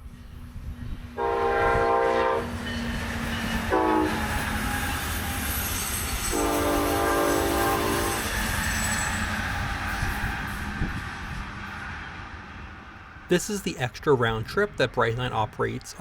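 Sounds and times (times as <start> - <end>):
train rumbling on rails: 0.0 - 13.3
train horn: 1.2 - 2.6, 3.7 - 4.4, 6.3 - 8.5.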